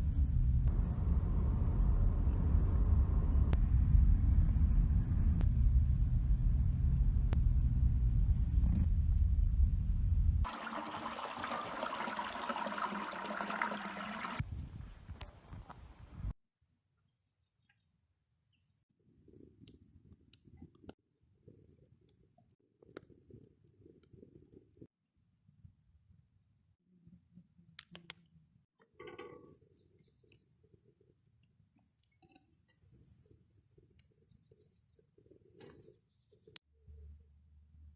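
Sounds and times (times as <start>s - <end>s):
low rumble: 0.0s - 10.5s
spring water gushing and splashing: 10.5s - 14.4s.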